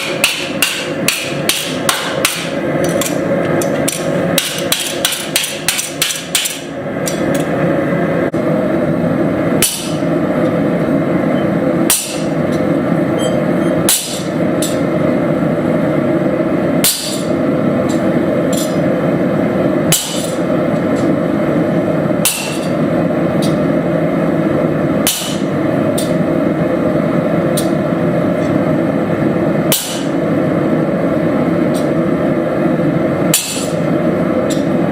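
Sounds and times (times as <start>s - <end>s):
hammer striking steel on anvil: 0.0s - 7.5s, 9.6s - 10.1s, 11.8s - 14.9s, 16.8s - 18.8s, 19.9s - 21.1s, 22.2s - 22.8s, 25.0s - 26.2s, 29.7s - 30.2s, 33.3s - 33.9s.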